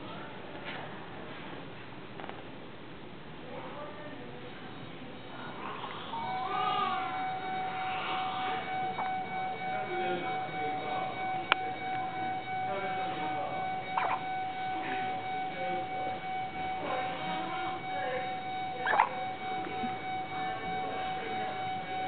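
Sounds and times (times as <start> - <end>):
steady electronic tone: 4.4 - 22.0.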